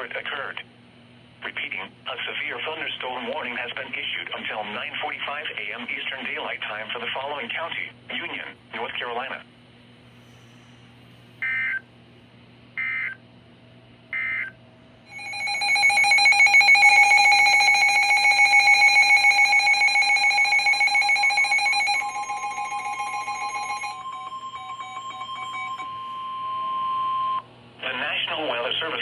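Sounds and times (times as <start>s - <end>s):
rapidly pulsing electronic alert tone: 15.1s - 27.4s
steady single-pitch warning tone: 15.1s - 27.5s.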